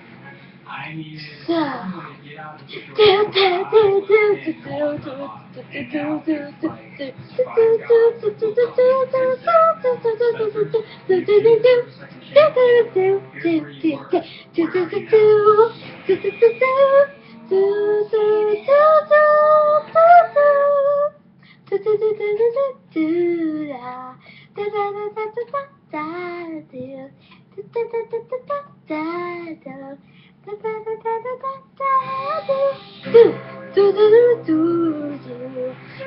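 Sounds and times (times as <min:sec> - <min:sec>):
girl singing wordless notes: 0:02.7 - 0:36.0.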